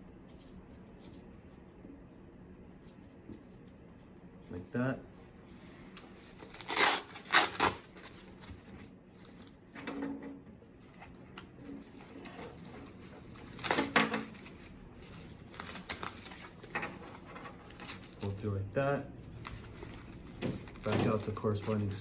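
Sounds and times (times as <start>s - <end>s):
strap pulled through buckle: 6.5s - 7.8s.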